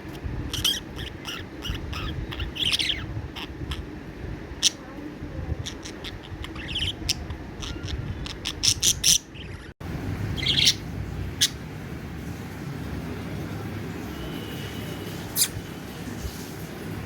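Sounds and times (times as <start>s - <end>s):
low background hum: 0.0s - 17.0s
budgerigar chirping: 0.5s - 3.9s, 5.6s - 9.7s, 10.4s - 10.8s.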